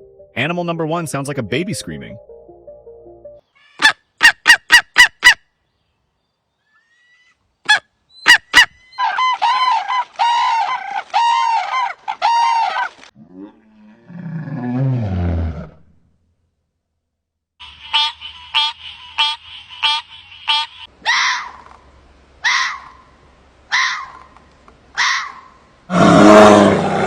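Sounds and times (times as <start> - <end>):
eagle yelping calls: 3.6 - 5.4, 6.7 - 13.0, 17.6 - 21.8, 22.4 - 23.1, 23.7 - 24.3, 25.0 - 25.6
bear growling: 13.2 - 15.8, 25.9 - 27.0
cranes honking trumpet calls: 17.6 - 21.4.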